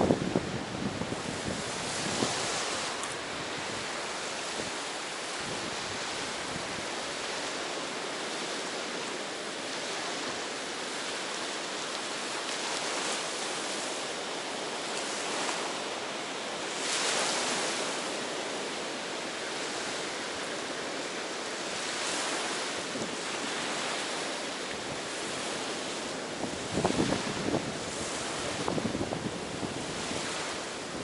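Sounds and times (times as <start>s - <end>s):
ocean waves washing on beach: 0.0s - 31.0s.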